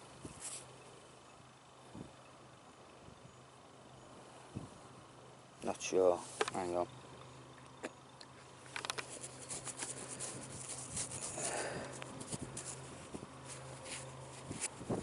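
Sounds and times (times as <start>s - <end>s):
brief rustle: 0.3s - 0.7s, 6.2s - 6.7s, 8.6s - 15.0s
small clicks: 7.6s - 10.0s
fingers scratching dirt off coin: 8.7s - 14.8s.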